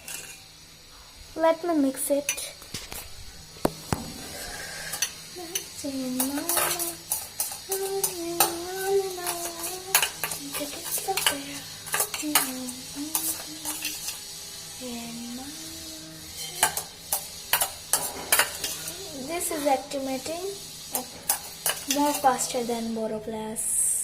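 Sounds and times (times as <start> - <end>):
spoon stirring in a bowl: 4.9 - 14.3, 16.4 - 19.7, 20.9 - 22.5
person humming: 12.4 - 13.8, 15.1 - 16.6.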